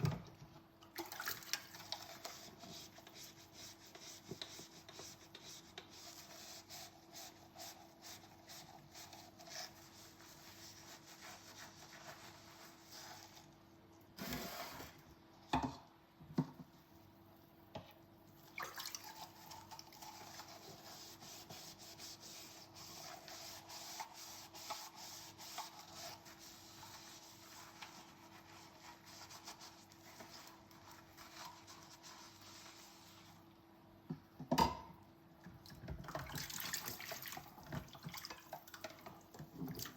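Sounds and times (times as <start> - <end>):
sponge scrubbing dishes: 1.0 - 13.6, 18.4 - 33.4.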